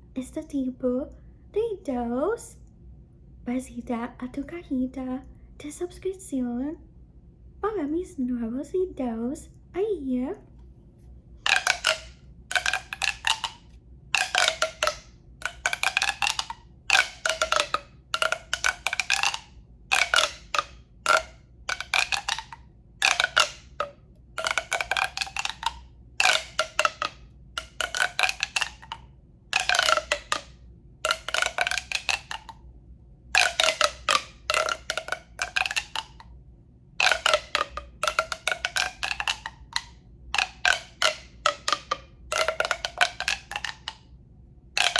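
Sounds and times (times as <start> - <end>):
rapid tapping on hollow tube: 11.4 - 32.6, 33.4 - 36.3, 37.0 - 44.0.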